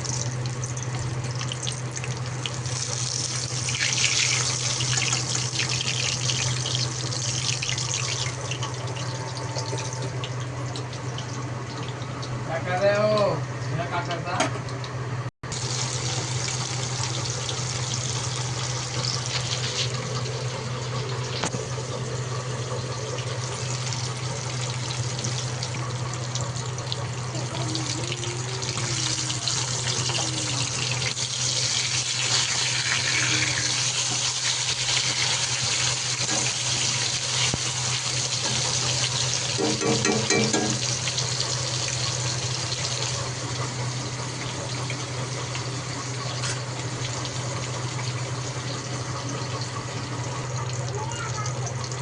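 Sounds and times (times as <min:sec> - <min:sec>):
water running from tap into sink: 0:00.0 - 0:14.9, 0:15.5 - 0:52.0
low hum: 0:15.6 - 0:46.1.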